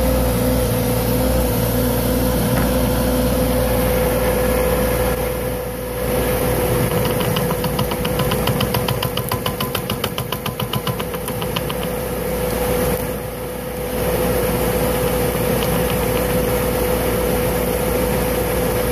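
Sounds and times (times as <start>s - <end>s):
small engine running: 0.0s - 18.9s
fast regular ticking: 7.0s - 12.0s.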